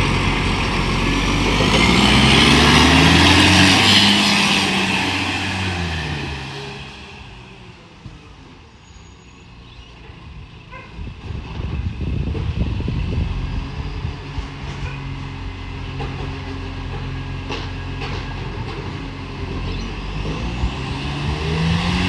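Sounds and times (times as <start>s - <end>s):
exhaust puffing rattle: 0.0s - 7.7s
diesel truck engine running: 0.0s - 22.0s.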